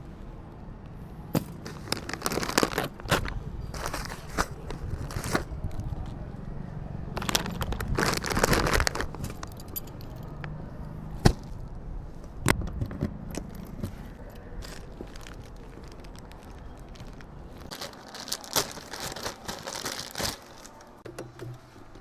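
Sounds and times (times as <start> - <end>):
rustling and scraping: 1.4 - 6.2, 11.2 - 22.0.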